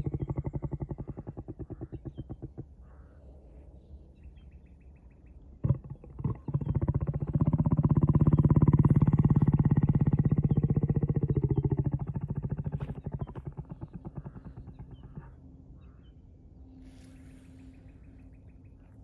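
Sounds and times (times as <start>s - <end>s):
lion rumbling: 0.0s - 3.6s, 5.5s - 16.1s.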